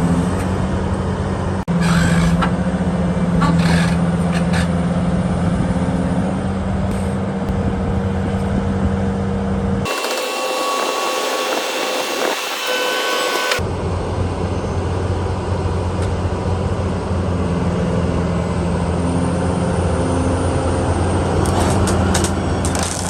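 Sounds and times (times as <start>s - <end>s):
excavator diesel engine droning: 9.8s - 22.9s
hissy machine noise with whines: 9.9s - 13.6s.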